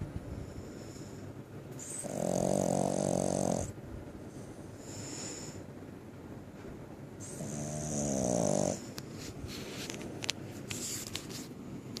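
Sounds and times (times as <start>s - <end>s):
person snoring: 1.9s - 3.7s, 7.2s - 8.8s.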